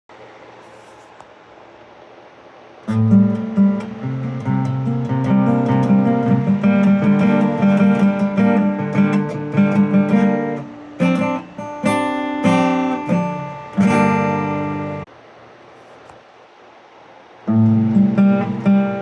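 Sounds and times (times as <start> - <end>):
picked guitar notes: 2.9 - 15.1, 17.5 - 19.0
strummed guitar chords: 2.9 - 15.1, 17.5 - 19.0.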